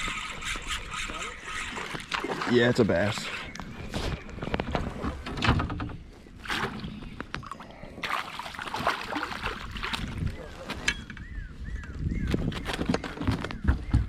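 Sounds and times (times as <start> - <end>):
water splashing and sloshing: 0.0 - 11.0
knocks and rattles on hull: 4.1 - 6.8, 12.3 - 14.0.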